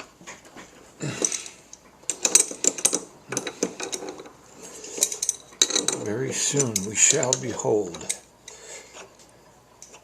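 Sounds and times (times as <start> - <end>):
wrench and steel parts clinking: 1.2 - 8.2.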